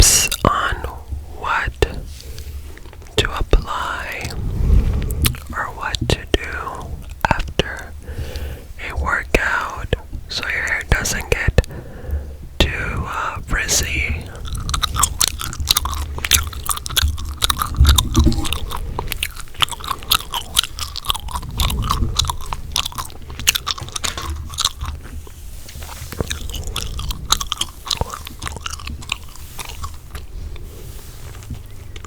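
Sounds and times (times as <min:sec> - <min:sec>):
gum chewing: 0:00.0 - 0:32.0.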